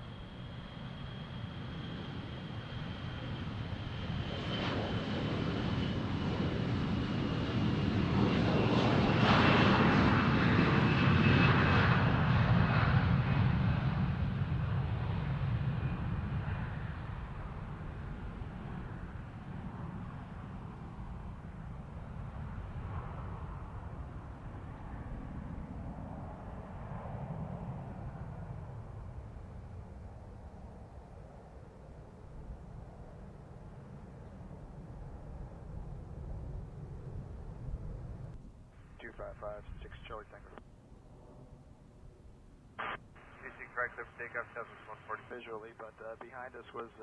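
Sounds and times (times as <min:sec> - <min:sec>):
jet airliner passing by: 0:00.0 - 0:42.2
high engine whine: 0:42.8 - 0:47.0.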